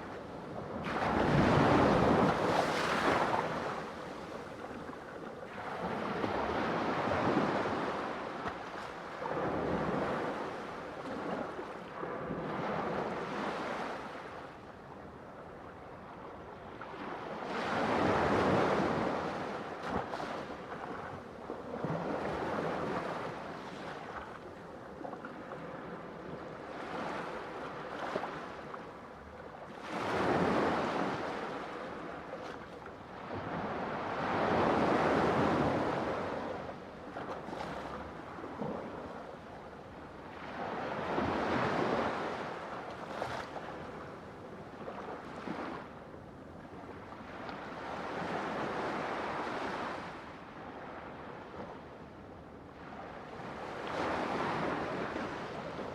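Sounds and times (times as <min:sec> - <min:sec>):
ocean waves breaking on shore: 0:00.0 - 0:04.8, 0:25.0 - 0:46.0, 0:46.6 - 0:51.9, 0:52.8 - 0:55.9.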